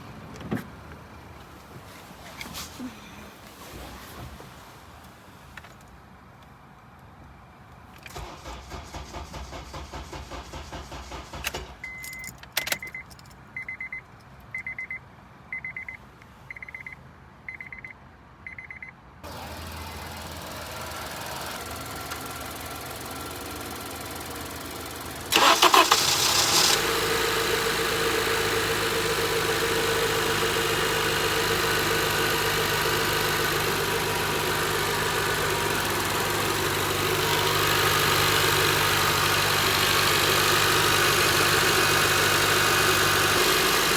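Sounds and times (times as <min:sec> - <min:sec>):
car engine cranking and idling: 0:07.9 - 0:13.3, 0:19.2 - 0:43.9.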